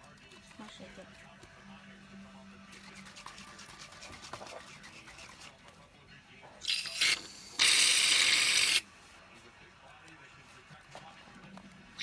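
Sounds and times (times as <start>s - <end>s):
aerosol can spraying: 6.7s - 8.8s.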